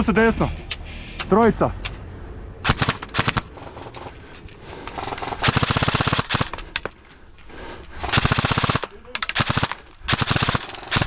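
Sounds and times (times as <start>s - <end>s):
airsoft rifles firing: 2.6s - 7.0s, 8.0s - 11.0s.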